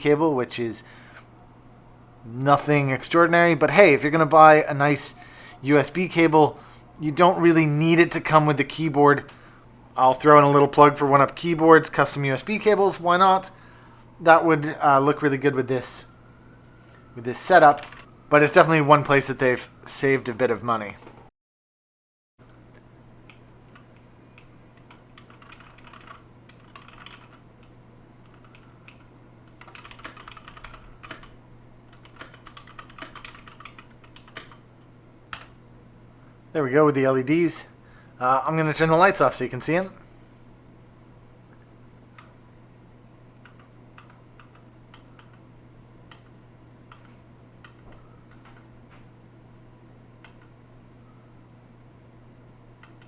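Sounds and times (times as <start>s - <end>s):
faint low hum: 0.0s - 21.3s, 22.4s - 53.0s
mechanical keyboard typing: 17.6s - 18.1s, 23.7s - 31.3s, 31.9s - 34.6s, 43.4s - 45.4s.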